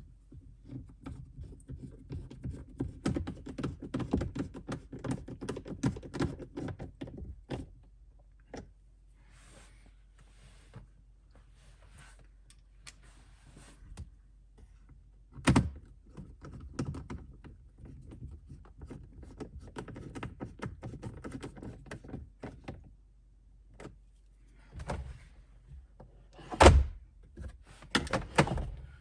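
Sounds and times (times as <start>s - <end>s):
heavy plastic thunks: 26.5s - 29.0s.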